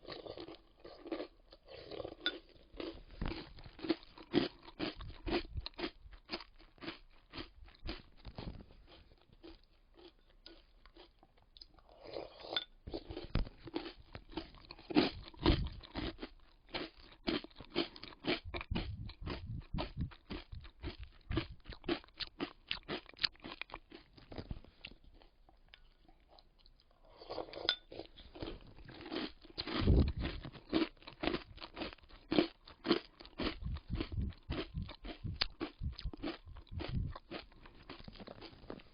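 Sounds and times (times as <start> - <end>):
crunching and chewing cereal: 0.0 - 38.9.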